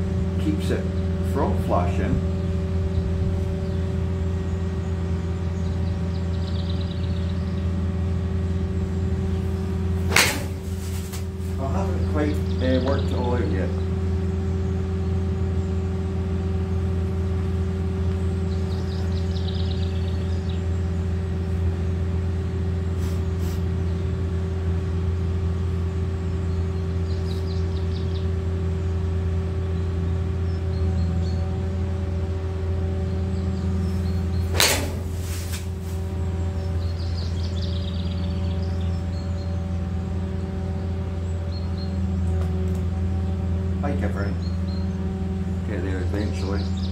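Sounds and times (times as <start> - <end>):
low machine drone: 0.0 - 46.9
golf club hitting ball: 10.0 - 11.3, 34.5 - 35.8.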